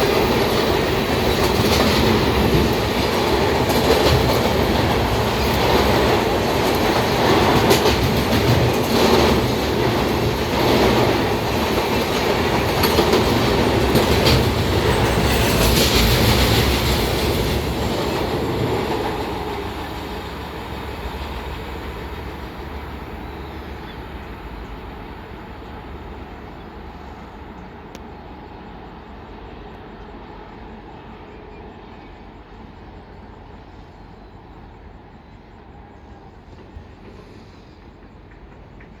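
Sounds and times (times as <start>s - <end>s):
train rolling past: 0.0s - 39.0s.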